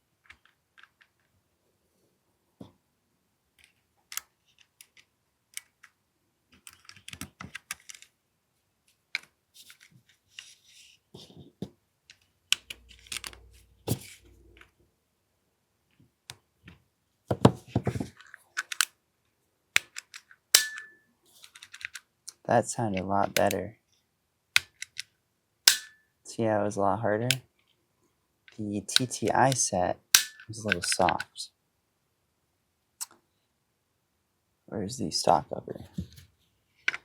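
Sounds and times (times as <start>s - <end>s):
airsoft pistol clicks and rattles: 18.2s - 19.0s, 30.1s - 31.2s.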